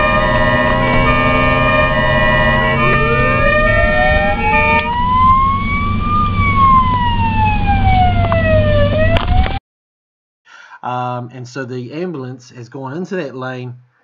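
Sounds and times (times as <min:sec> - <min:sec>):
ambulance siren wailing: 0:00.0 - 0:09.6
low road rumble: 0:00.0 - 0:09.6.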